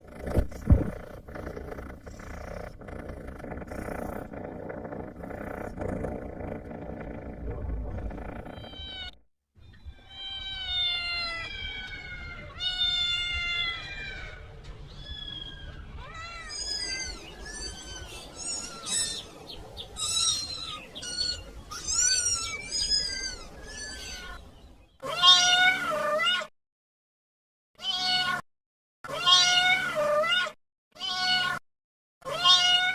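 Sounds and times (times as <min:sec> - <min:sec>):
low rumble: 0:00.3 - 0:09.0
kitten meowing: 0:15.0 - 0:19.3, 0:20.0 - 0:24.4, 0:29.1 - 0:31.6, 0:32.3 - 0:32.9.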